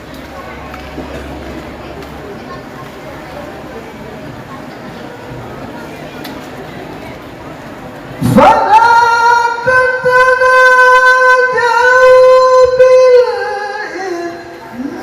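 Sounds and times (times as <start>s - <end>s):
man chanting melodic recitation: 8.2s - 15.0s.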